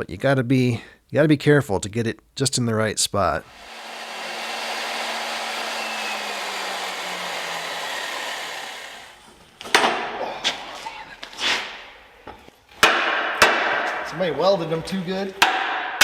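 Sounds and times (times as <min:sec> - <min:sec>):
power tool whirring: 0:03.5 - 0:09.2.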